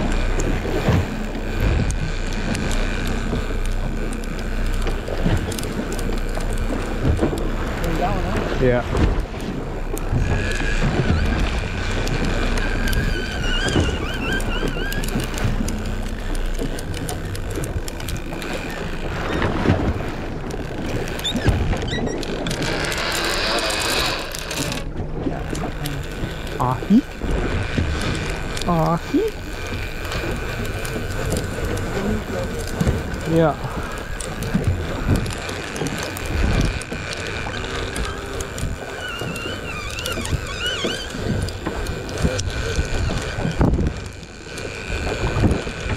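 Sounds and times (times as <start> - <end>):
boat motor running: 0.0 - 45.9
sharp clicks: 0.0 - 45.9
water noise: 0.0 - 45.9
wind: 0.0 - 45.9
wavering high whine: 9.6 - 21.3.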